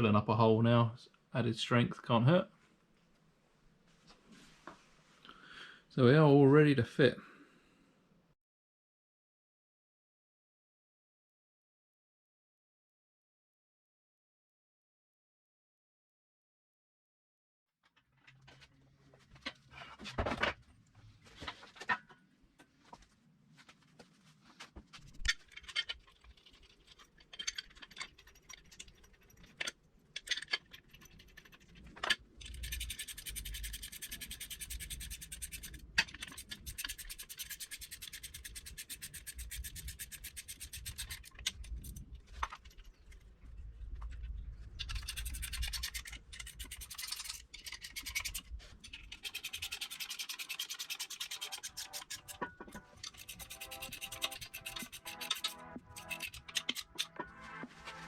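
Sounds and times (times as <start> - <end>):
tools clicking and knocking: 25.1 - 43.2, 44.0 - 57.6
power tool rasping on metal: 32.4 - 41.4, 49.1 - 57.6.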